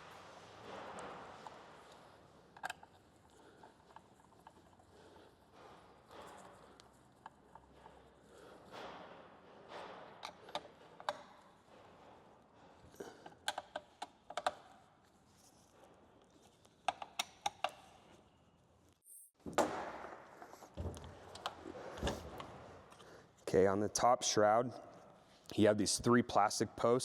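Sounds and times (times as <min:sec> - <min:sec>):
tools and screws clicking: 0:13.2 - 0:14.8, 0:16.4 - 0:17.9.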